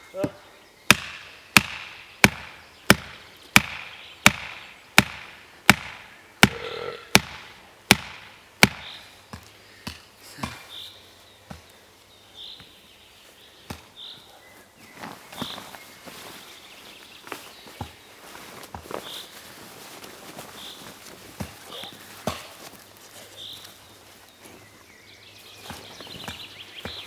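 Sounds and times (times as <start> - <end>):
axe chopping wood: 0.2 - 10.7, 22.2 - 22.7.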